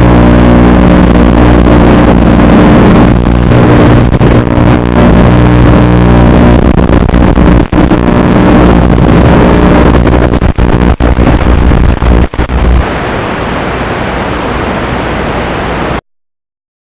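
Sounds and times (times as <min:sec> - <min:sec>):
distorted drone motors buzzing: 0:00.0 - 0:12.8
steady loud hiss: 0:00.0 - 0:16.0.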